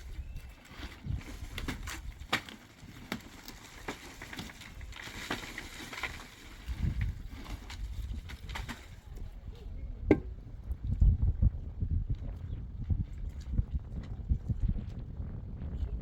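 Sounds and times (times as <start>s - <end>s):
low thuds: 10.0s - 15.5s.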